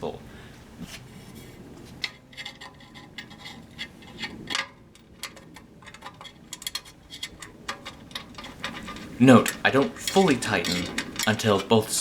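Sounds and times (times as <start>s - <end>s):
metal bolts and wrench clinking: 2.0s - 12.0s.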